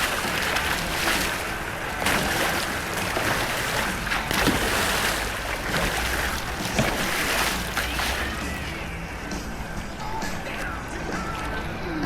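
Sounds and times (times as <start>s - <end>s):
water splashes: 0.0s - 9.0s
whitewater rushing: 0.0s - 9.0s.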